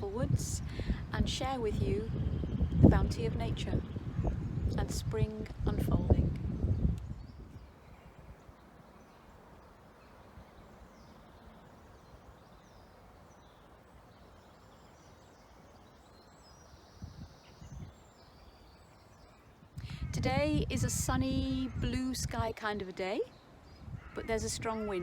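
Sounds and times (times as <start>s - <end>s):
low wind rumble: 0.0s - 25.0s
faint bird chirps: 6.8s - 20.2s.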